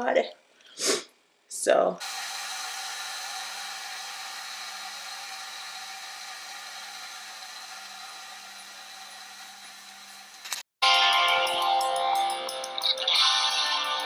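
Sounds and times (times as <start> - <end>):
kitchen appliance hissing and humming: 2.0 - 10.6.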